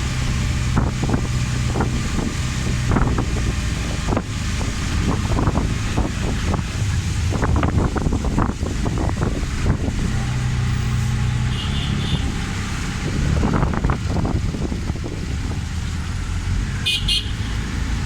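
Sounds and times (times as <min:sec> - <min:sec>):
road traffic hum: 0:00.0 - 0:18.0
high horn beeps: 0:11.0 - 0:12.4, 0:16.8 - 0:17.6.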